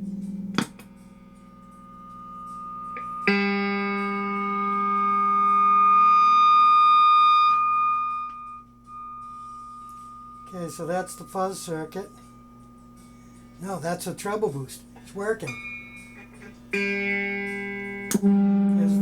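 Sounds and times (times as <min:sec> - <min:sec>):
bright plucked electric guitar note: 0:01.6 - 0:12.2, 0:15.5 - 0:19.0.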